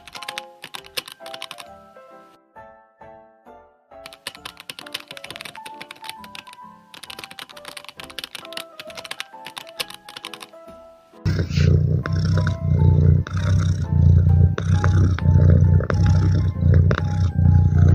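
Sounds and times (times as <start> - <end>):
keyboard typing clicks: 0.0 - 1.7, 4.0 - 10.7, 14.5 - 17.9
background music: 0.0 - 17.9.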